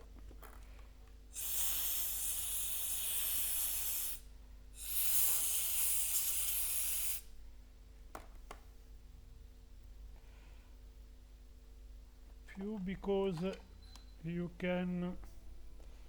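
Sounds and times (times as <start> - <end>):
aerosol spray can hissing: 1.3 - 7.3.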